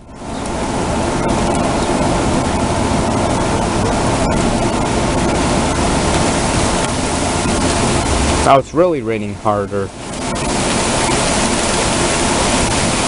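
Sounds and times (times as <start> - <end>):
heavy rain pouring: 0.0 - 13.0.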